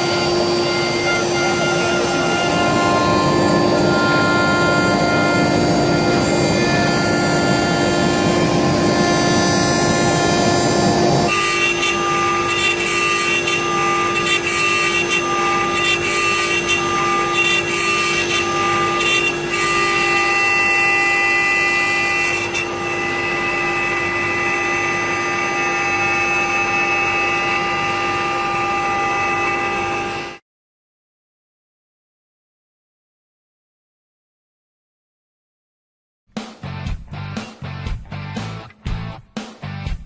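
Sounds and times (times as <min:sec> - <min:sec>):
router spindle whining: 0:00.0 - 0:30.4.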